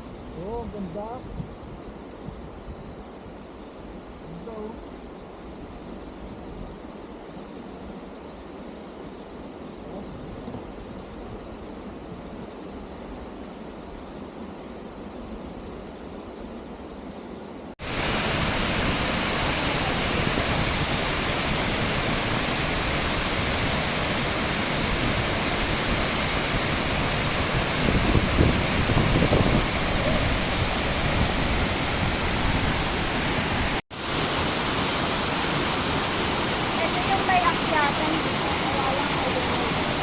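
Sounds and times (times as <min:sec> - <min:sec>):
waterfall rushing water: 0:17.8 - 0:40.0.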